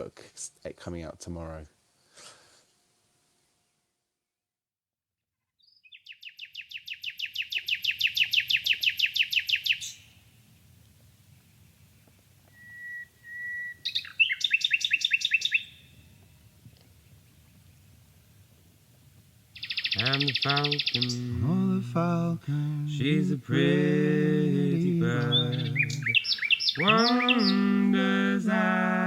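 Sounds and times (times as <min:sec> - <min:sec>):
nightingale singing: 0:05.6 - 0:10.3, 0:11.5 - 0:16.3, 0:19.6 - 0:29.0.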